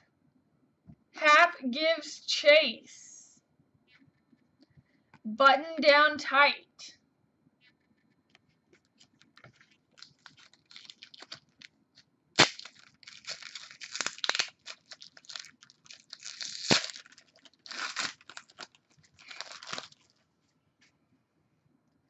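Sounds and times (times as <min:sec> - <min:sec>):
foil wrapper tearing and crinkling: 0:09.1 - 0:11.7, 0:12.4 - 0:20.1.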